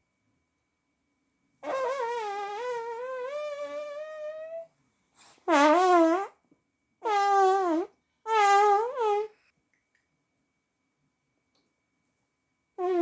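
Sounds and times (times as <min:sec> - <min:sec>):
fart sound effects: 0:01.6 - 0:04.6, 0:12.8 - 0:13.0.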